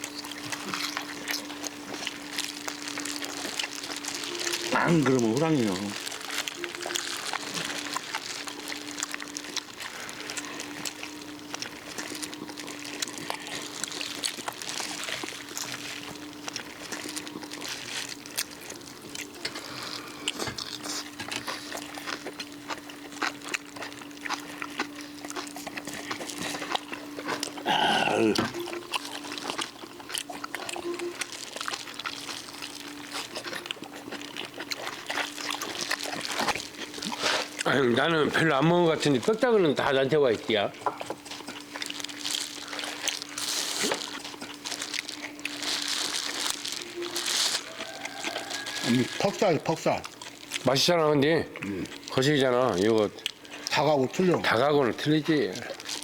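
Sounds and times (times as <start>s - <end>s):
chewing and tearing food: 0.0s - 56.0s
animal call: 3.0s - 5.6s, 46.8s - 49.4s.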